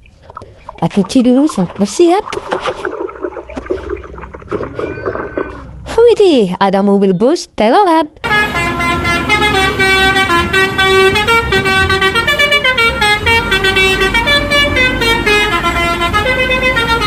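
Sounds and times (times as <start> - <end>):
multi-tone musical bus horn: 8.2 - 17.0.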